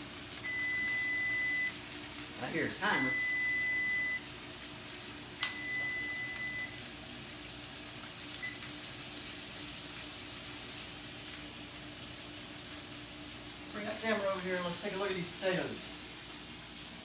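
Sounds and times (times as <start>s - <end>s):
steaks sizzling in a skillet: 0.0s - 17.0s
electronic timer beep: 0.4s - 1.8s, 3.1s - 4.2s, 5.5s - 6.8s, 8.4s - 8.6s.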